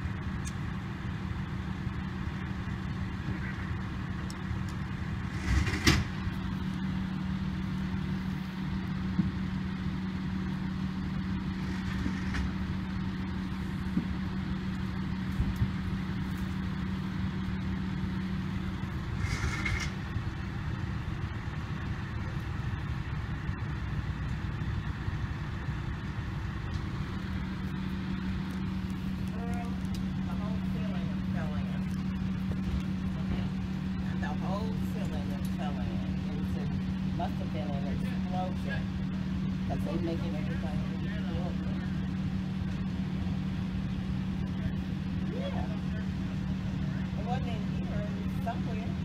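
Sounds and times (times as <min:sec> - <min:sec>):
low engine hum: 0:00.0 - 0:49.0.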